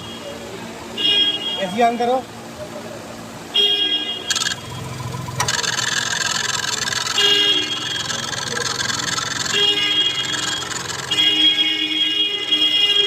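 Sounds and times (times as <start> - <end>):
belt tensioner rasping: 4.3 - 11.4
car engine running: 4.3 - 11.5.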